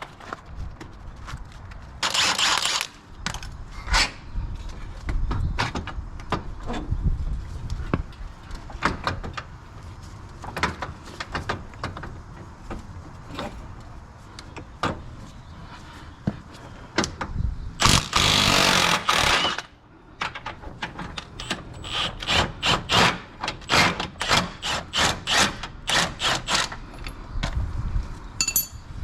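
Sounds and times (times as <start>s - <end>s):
hand tools and metal parts clinking: 13.3s - 14.0s, 28.4s - 29.0s.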